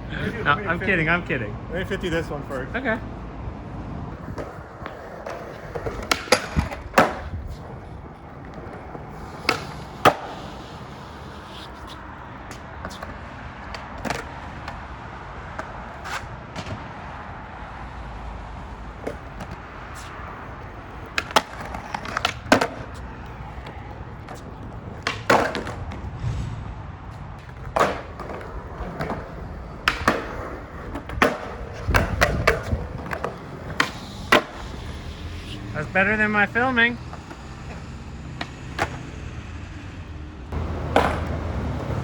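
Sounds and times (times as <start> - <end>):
skateboard rolling on pavement: 0.0 - 42.0
skateboard clacks: 4.1 - 14.9, 18.9 - 26.1, 27.4 - 35.0, 37.1 - 39.2, 40.5 - 42.0.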